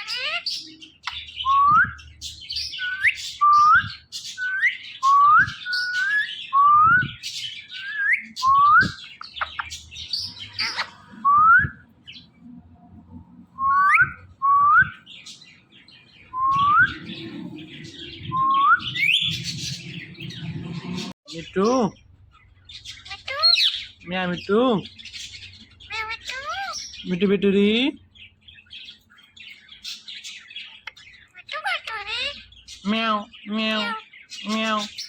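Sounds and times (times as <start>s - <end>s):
parakeet whistling and chirping: 0.0s - 12.4s, 13.4s - 21.2s, 22.8s - 24.0s, 25.0s - 27.2s, 28.5s - 32.8s.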